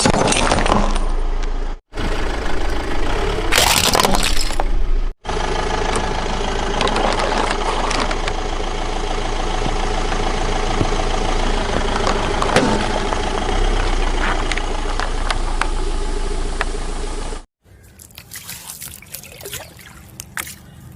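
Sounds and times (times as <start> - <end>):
car engine running: 1.5 - 17.5.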